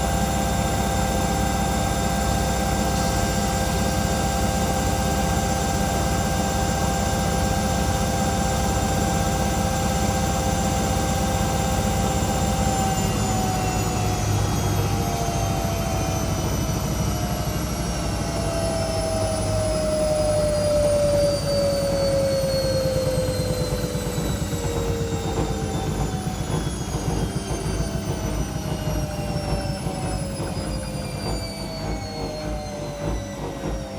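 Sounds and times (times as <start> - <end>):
washing machine spinning: 0.0 - 33.9.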